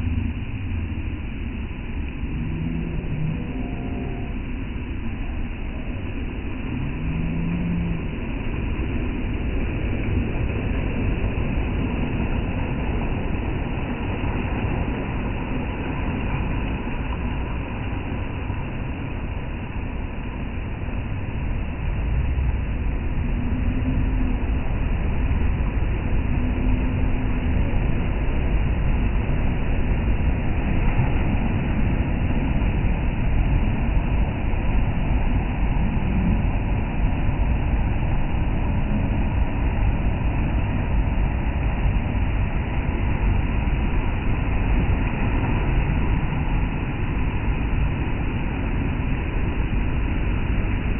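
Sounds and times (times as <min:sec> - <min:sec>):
waves breaking on shore: 0:24.0 - 0:50.9.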